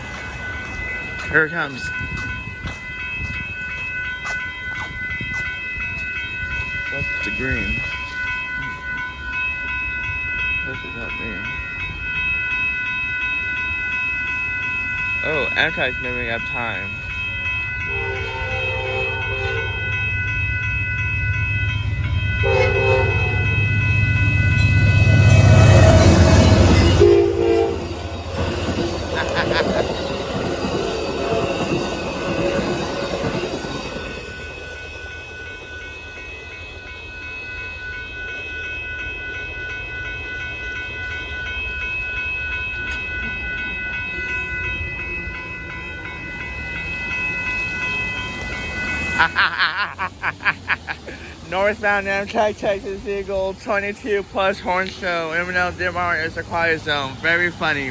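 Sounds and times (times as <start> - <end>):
train cars rolling past: 0.0 - 57.9
train rumbling past: 0.0 - 57.9
diesel locomotive horn blasts: 17.9 - 19.9, 22.4 - 24.1, 24.8 - 28.1.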